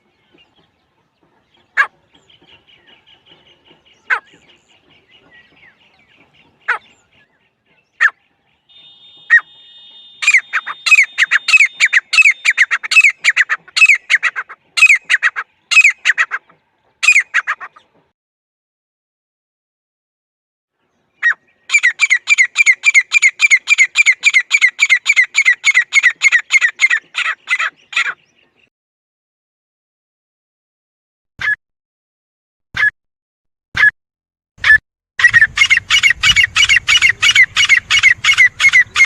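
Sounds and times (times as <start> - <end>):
francolin calls: 8.0 - 16.4, 21.2 - 28.2
faint high trill: 8.7 - 12.5.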